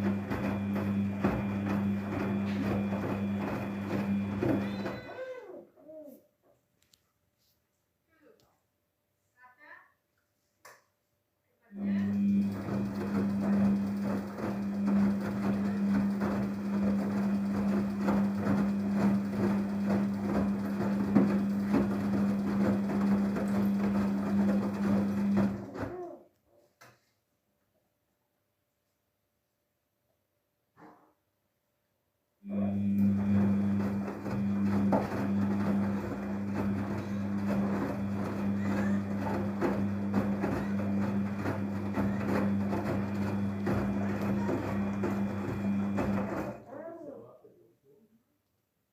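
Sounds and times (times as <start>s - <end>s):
washing machine motor humming: 0.0s - 5.5s, 11.8s - 26.0s, 32.4s - 46.6s.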